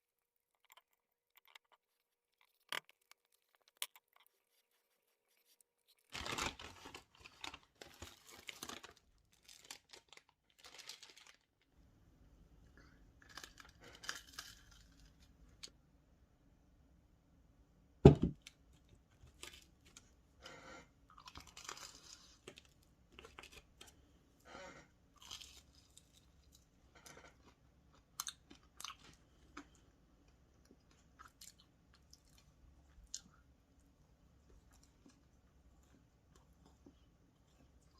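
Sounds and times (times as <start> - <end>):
person chewing crunchy food: 21.0 - 24.0, 25.1 - 33.4.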